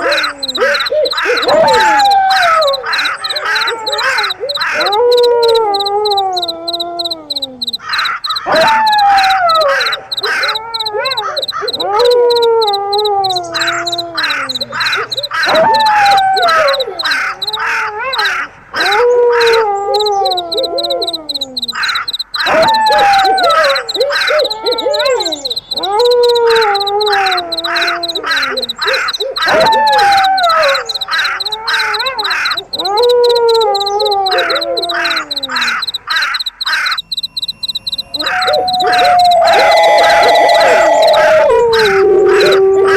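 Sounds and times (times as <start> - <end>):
wolf howling: 0.0 - 35.8, 38.1 - 42.9
crickets chirping: 0.0 - 42.9
crow cawing: 13.5 - 18.5, 21.7 - 24.4, 34.3 - 37.0.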